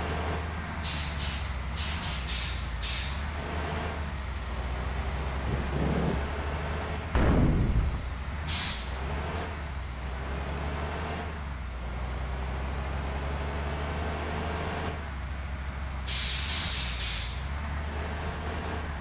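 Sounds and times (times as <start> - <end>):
bus diesel engine rumbling: 0.0 - 19.0
air brake hisses: 0.8 - 3.2, 8.5 - 9.0, 16.1 - 17.5.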